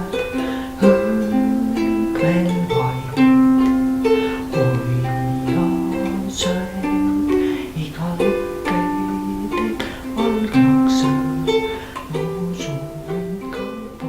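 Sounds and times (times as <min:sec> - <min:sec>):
plucked-string melody: 0:00.0 - 0:14.0
bass notes: 0:02.7 - 0:06.1.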